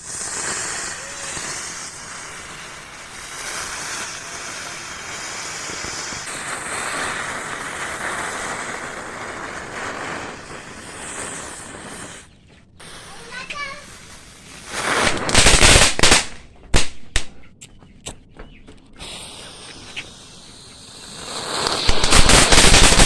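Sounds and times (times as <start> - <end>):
firework hissing and crackling: 0.0 - 17.3, 19.0 - 23.0.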